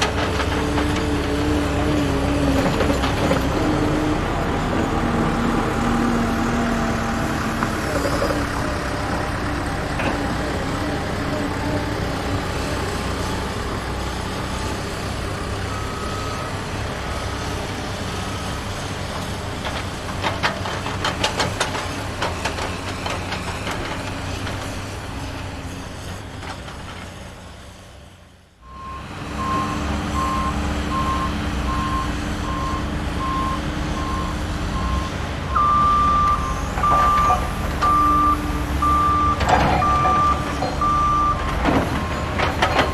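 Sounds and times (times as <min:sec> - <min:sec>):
truck engine running: 0:00.0 - 0:25.4, 0:28.8 - 0:42.9
reversing alarm beeps: 0:28.7 - 0:42.9.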